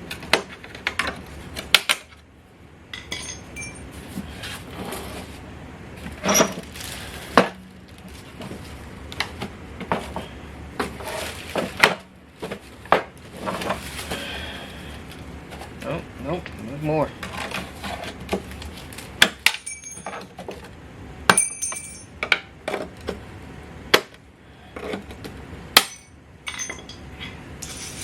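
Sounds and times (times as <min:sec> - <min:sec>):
metallic clicks and clinks: 0:03.1 - 0:03.9, 0:19.5 - 0:20.2, 0:21.3 - 0:22.1.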